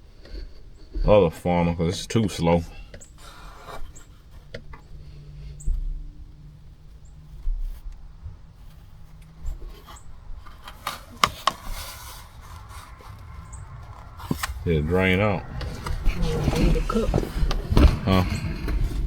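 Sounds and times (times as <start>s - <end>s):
low steady hum: 0.0s - 19.0s
rubbing: 0.0s - 19.0s
sharp clicks and knocks: 9.1s - 14.7s.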